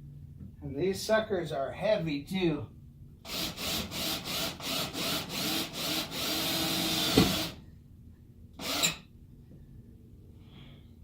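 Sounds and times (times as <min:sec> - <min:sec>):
power drill driving screw: 0:03.3 - 0:07.6, 0:08.6 - 0:09.0.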